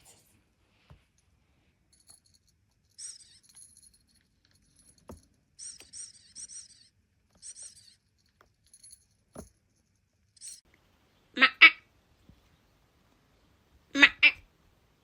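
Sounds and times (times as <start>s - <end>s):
small metal bell jingling: 1.9s - 9.8s, 10.4s - 10.6s.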